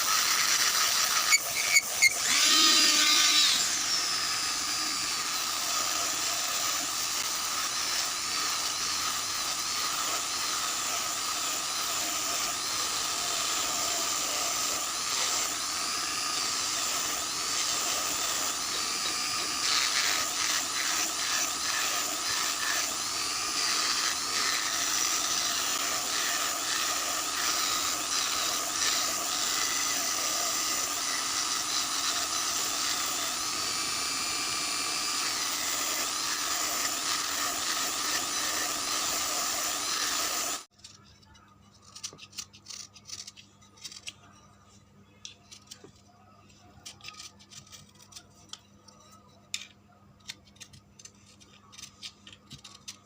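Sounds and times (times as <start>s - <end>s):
electric power tool whining: 0.0s - 40.7s.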